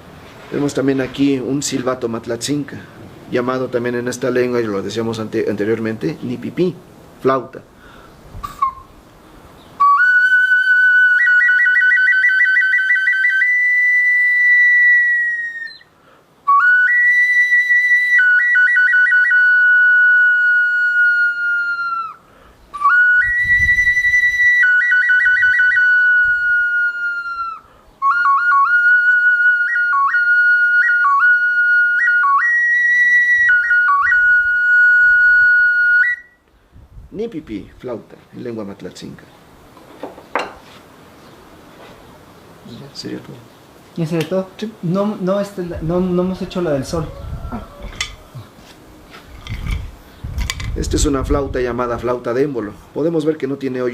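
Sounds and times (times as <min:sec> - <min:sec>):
high whistle with trills: 0:08.4 - 0:09.0, 0:09.8 - 0:15.9, 0:16.5 - 0:22.2, 0:22.8 - 0:36.5.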